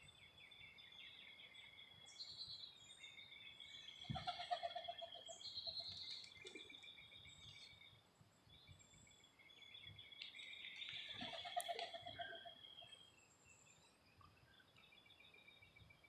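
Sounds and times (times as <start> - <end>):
birds trilling: 3.8 - 5.9, 10.6 - 13.1.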